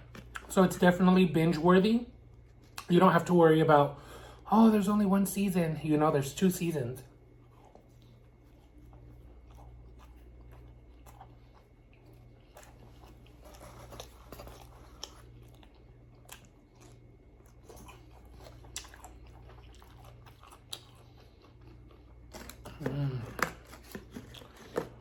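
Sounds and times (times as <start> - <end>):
person chewing food: 0.0 - 0.5, 2.2 - 2.9, 7.1 - 25.0.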